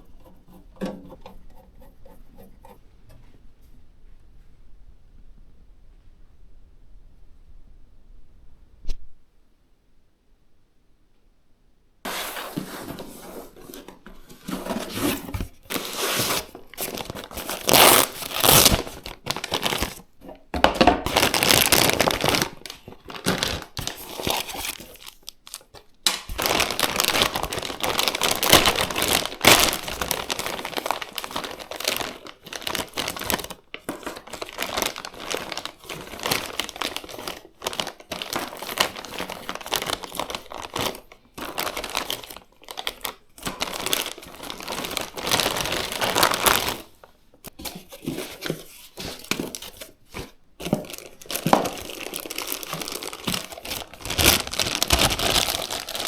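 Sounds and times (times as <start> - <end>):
plastic wrap crinkling and tearing: 12.1 - 56.0.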